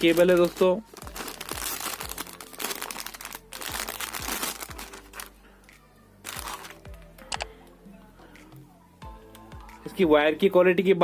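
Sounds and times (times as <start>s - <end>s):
plastic packaging crinkling: 0.0s - 5.4s, 6.2s - 6.9s.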